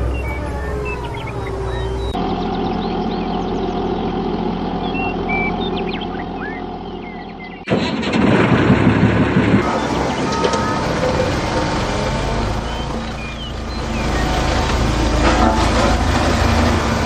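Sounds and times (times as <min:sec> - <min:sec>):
birds chirping: 0:00.0 - 0:07.7, 0:09.6 - 0:15.4
rough rumble: 0:07.6 - 0:17.0.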